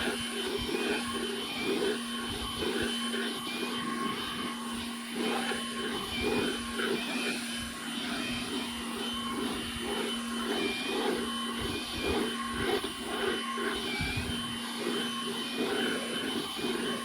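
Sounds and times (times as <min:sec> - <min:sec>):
chainsaw cutting log: 0:00.0 - 0:17.0.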